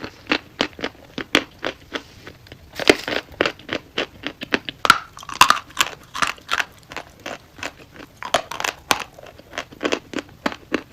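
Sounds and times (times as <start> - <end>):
crackling crunches: 0.0 - 10.9.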